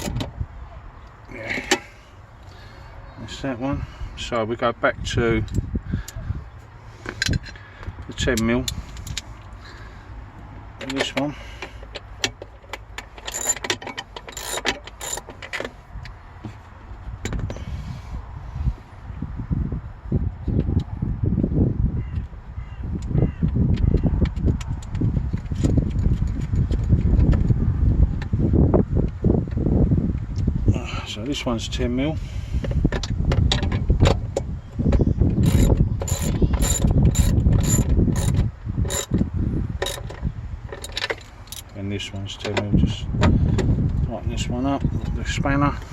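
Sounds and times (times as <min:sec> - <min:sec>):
metal tools clinking: 0:12.3 - 0:15.6, 0:35.4 - 0:39.2, 0:39.8 - 0:41.8
ratchet wrench clicking: 0:13.2 - 0:15.4, 0:35.4 - 0:39.2, 0:39.8 - 0:40.2, 0:40.8 - 0:41.7.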